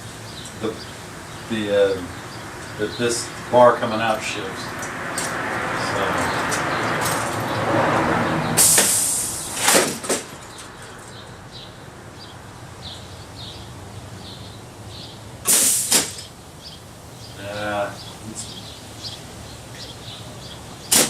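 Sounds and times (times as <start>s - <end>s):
pneumatic air hiss: 8.6s - 10.2s, 15.4s - 16.3s.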